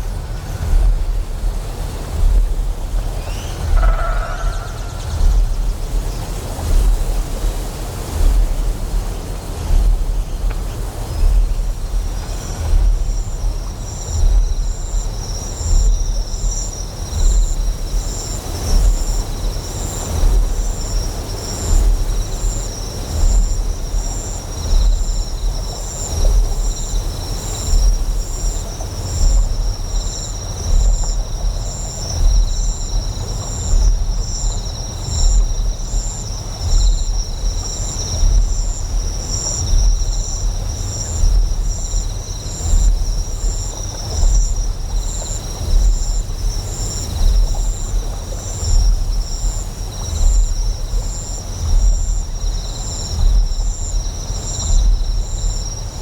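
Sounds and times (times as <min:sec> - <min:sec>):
deep generator hum: 0:00.0 - 0:07.4
insect chirring: 0:00.0 - 0:56.0.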